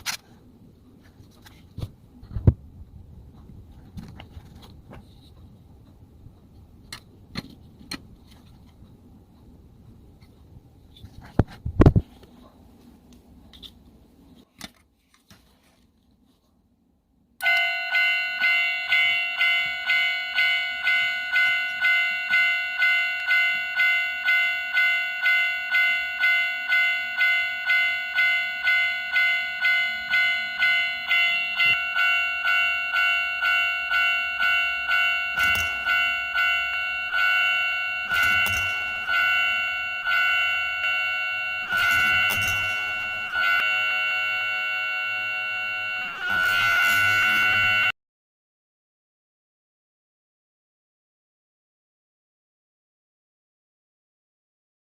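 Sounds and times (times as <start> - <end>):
electronic crossing warning bell: 17.4 - 48.0.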